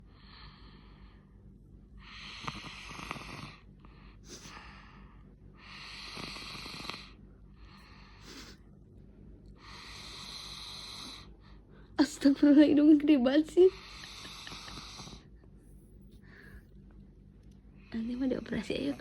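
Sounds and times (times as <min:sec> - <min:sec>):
child snoring: 0:02.0 - 0:03.7, 0:05.6 - 0:07.2, 0:09.7 - 0:11.3, 0:13.8 - 0:15.3.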